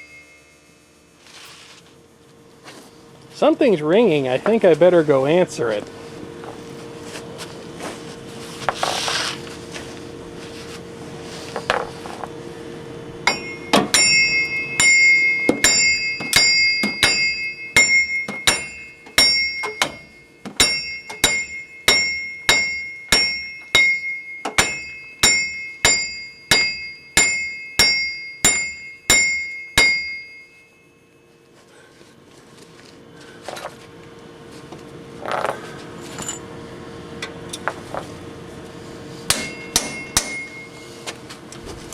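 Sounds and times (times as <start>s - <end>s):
hammer pounding ringing steel: 0.0s - 0.9s, 13.2s - 31.1s, 39.3s - 41.0s.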